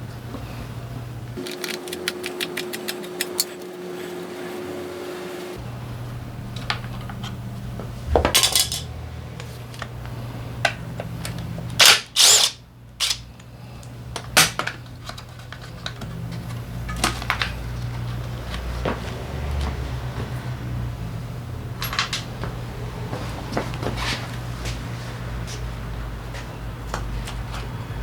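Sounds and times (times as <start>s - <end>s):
steady low hum: 0.0s - 19.2s
metal tools clinking on workbench: 8.2s - 8.9s, 21.8s - 22.3s.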